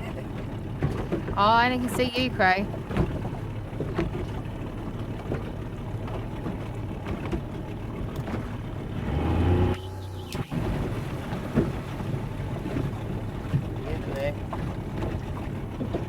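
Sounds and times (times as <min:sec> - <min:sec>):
boat motor running: 0:00.0 - 0:16.0.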